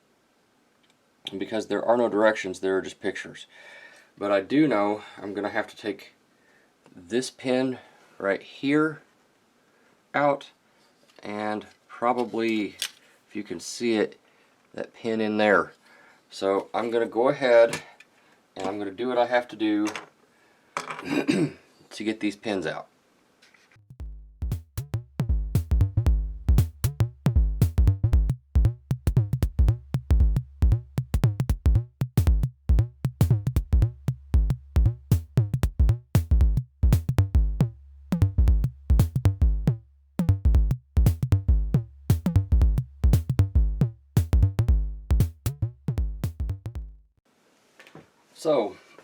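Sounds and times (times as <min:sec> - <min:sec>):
electronic music with drum machine: 0:23.9 - 0:47.0.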